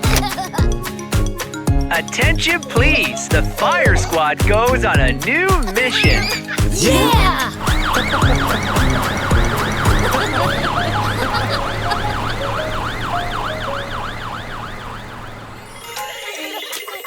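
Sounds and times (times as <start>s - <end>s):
cartoon fire engine siren yelp: 6.8s - 16.1s.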